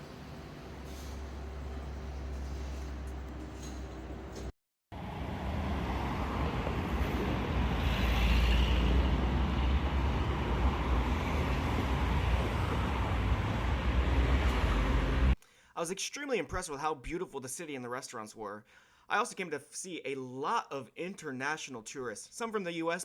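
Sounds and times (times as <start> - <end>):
road traffic rumble: 0.0 - 15.4.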